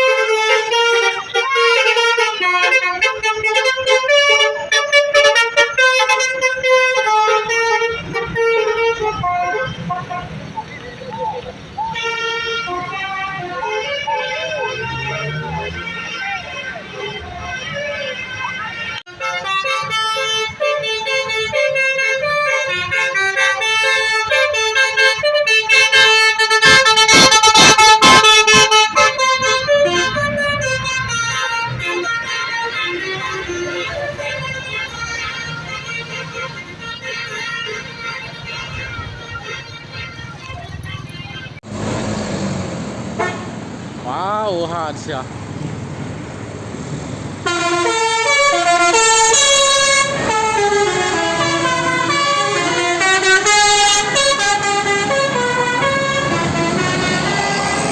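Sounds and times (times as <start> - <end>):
bus musical air horn melody: 0.0 - 10.6, 11.6 - 40.4, 41.6 - 44.9, 47.3 - 57.9.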